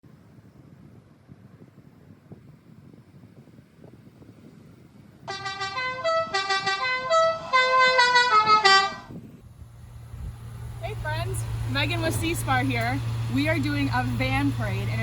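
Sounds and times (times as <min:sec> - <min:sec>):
musical horn playing a tune: 0:05.3 - 0:09.1.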